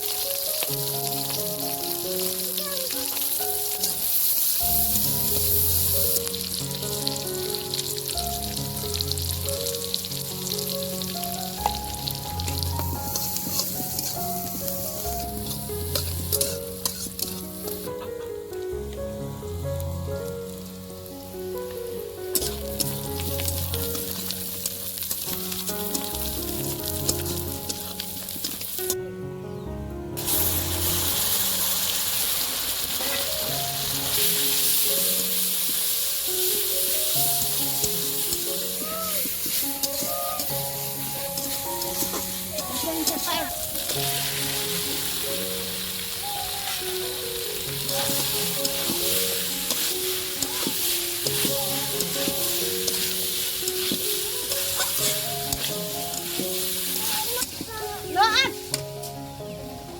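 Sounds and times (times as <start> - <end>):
food sizzling in hot oil: 0.0 - 18.6, 19.3 - 29.0, 30.2 - 59.2
background tune: 0.0 - 59.9
stirring in pan: 11.4 - 18.0, 30.2 - 46.0, 46.8 - 57.7.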